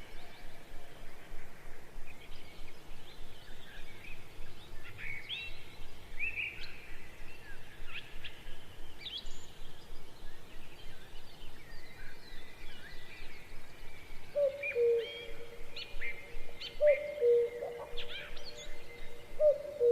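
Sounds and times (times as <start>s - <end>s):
lower held bird call: 14.4s - 19.9s.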